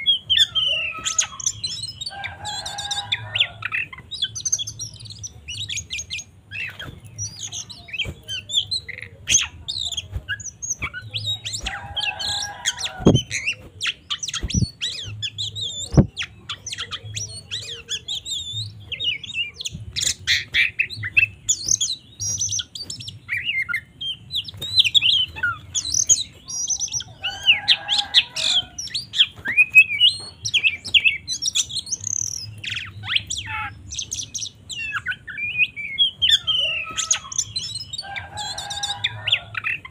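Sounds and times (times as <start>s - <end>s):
bird singing chirps and whistles: 0.0s - 39.9s.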